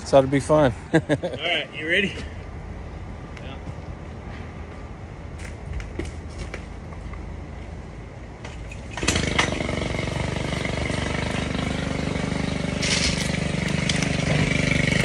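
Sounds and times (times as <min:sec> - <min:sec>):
engine starting and idling: 0:08.8 - 0:15.0.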